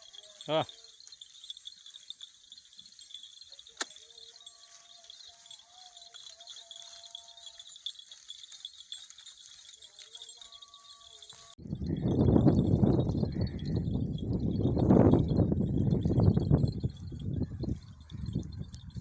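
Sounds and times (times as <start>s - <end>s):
distant drawn-out calls: 0.0s - 7.7s.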